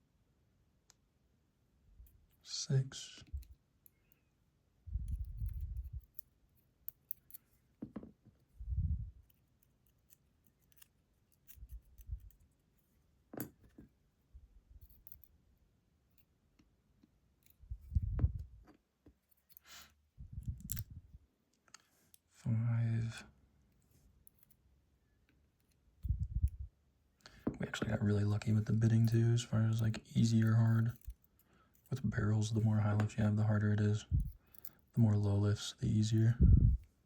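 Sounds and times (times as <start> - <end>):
metallic clicks of lock pins: 20.5 - 20.9.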